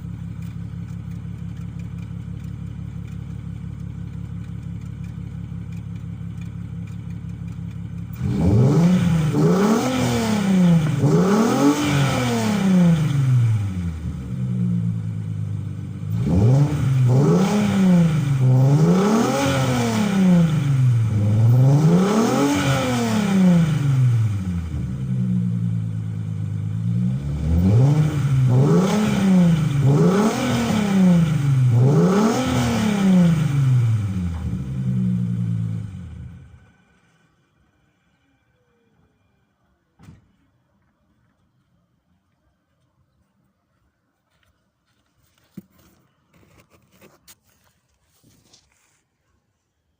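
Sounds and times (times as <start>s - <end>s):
car engine idling and revving: 0.0s - 38.2s.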